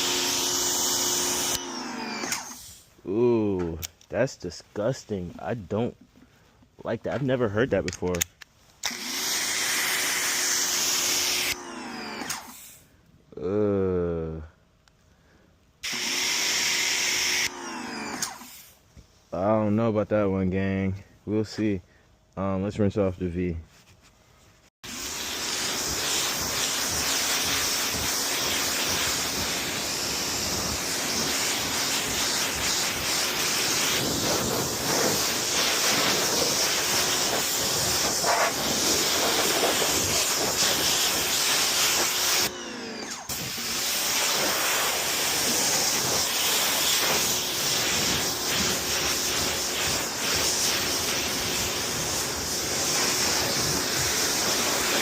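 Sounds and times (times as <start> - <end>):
pressure washer water jet hissing: 24.8 - 55.0.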